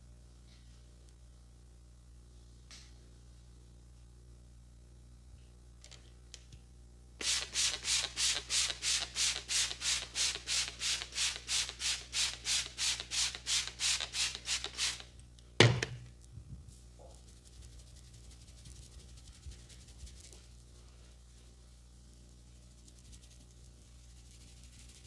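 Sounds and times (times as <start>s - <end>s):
hands rubbing on skin: 7.2s - 15.1s.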